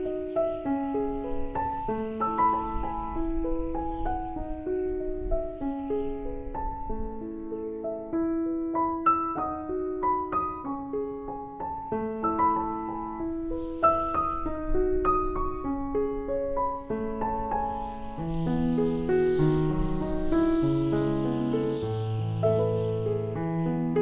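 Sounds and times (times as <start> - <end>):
slow piano music: 0.0 - 24.0.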